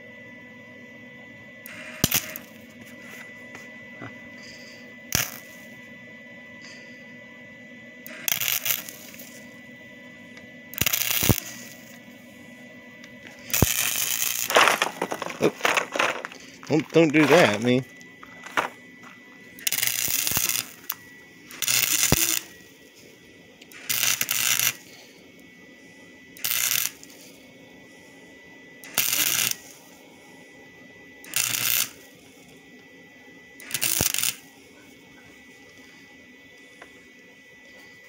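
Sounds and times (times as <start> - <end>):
arc welder crackling: 1.6 - 3.2, 4.4 - 5.8, 8.0 - 25.1, 26.3 - 27.4, 28.8 - 30.0, 31.1 - 32.9, 33.5 - 38.0.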